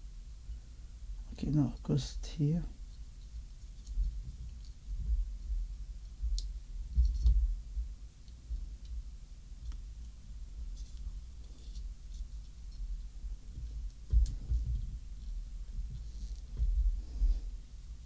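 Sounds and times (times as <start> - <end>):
dull low bumps: 13.6 - 17.6.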